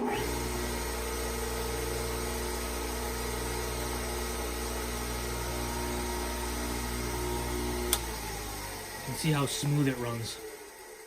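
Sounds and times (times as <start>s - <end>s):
grinder motor humming: 0.0s - 11.0s.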